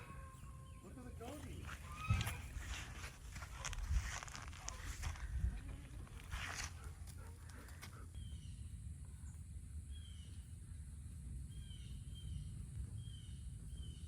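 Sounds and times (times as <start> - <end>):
bird chirping: 0.0 - 2.8, 7.9 - 14.0
rustling: 1.2 - 8.0
faint low rumble: 1.6 - 14.0.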